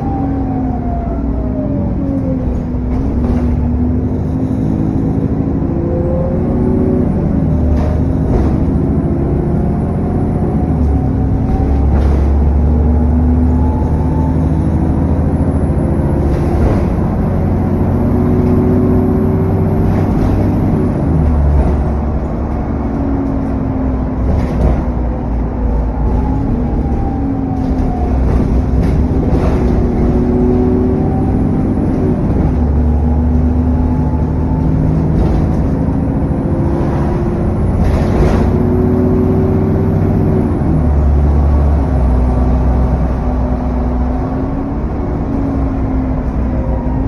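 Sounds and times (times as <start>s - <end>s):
vehicle engine revving: 27.7s - 46.3s.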